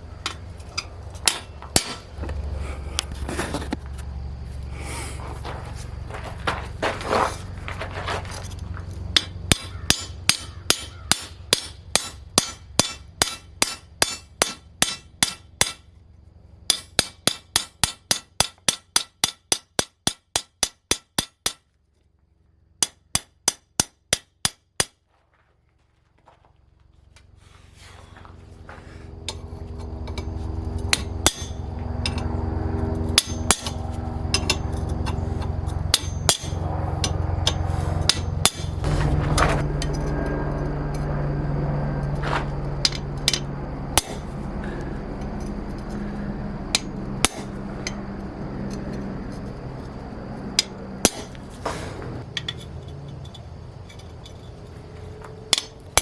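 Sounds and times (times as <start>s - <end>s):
steady rumbling with low hum: 0.0s - 56.0s
hammer striking steel on anvil: 0.2s - 2.1s, 9.2s - 15.9s, 16.7s - 21.6s, 22.8s - 25.0s, 30.9s - 32.2s, 33.2s - 35.2s, 35.9s - 41.1s, 42.8s - 44.4s, 46.7s - 48.0s, 50.6s - 52.6s, 55.5s - 56.0s.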